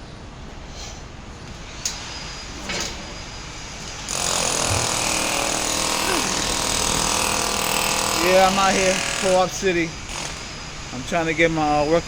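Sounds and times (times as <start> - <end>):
loud machine noise with tones: 2.1 - 11.0.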